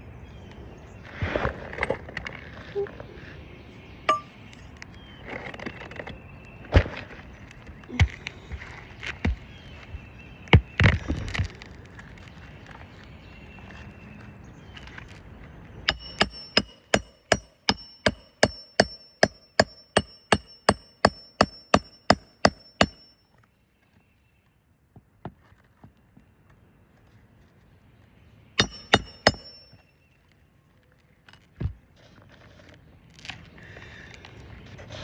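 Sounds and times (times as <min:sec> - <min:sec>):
hammer striking nails: 0:04.1 - 0:04.3, 0:15.9 - 0:23.2, 0:28.6 - 0:29.8.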